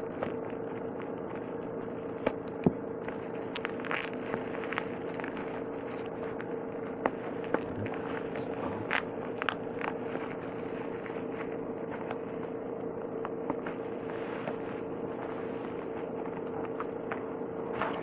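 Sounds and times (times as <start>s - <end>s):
packaging clicks and crackles: 0.0s - 12.3s
background hum: 0.0s - 18.0s
packaging rustling: 0.0s - 18.0s.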